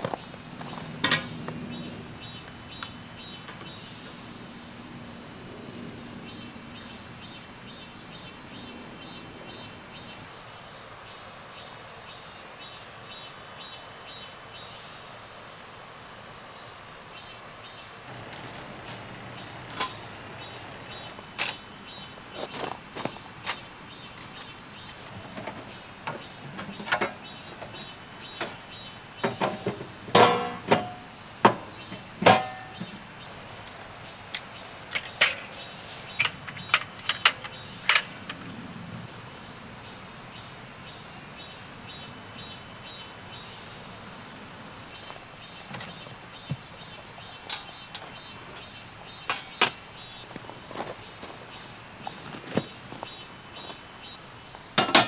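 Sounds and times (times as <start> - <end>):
faint regular pulsing: 0.0 - 10.3, 18.1 - 39.0.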